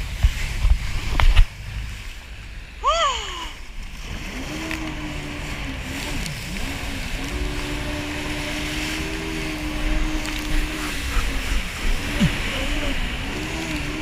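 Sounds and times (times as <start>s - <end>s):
jet ski engine running: 0.0s - 14.0s
wind: 0.0s - 14.0s
water spray: 4.0s - 14.0s.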